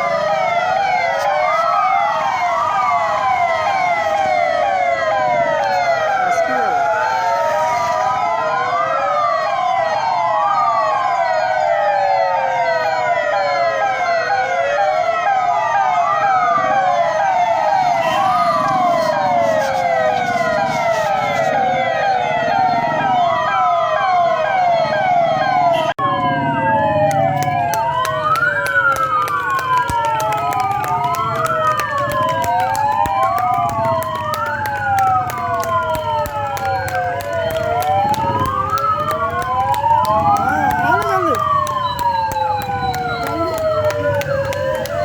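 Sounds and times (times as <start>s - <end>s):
police sirens wailing: 0.0s - 17.6s, 26.0s - 45.0s
police sirens yelping: 26.0s - 45.0s.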